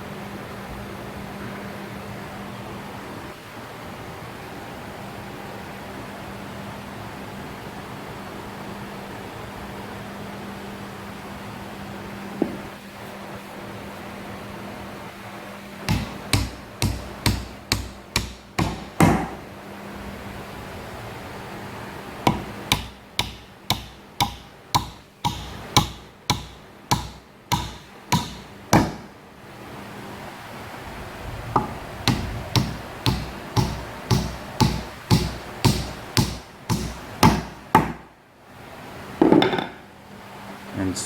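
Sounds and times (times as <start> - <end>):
hammer tapping on wood: 12.4 - 12.7, 15.9 - 19.4, 22.3 - 29.1, 31.6 - 38.0.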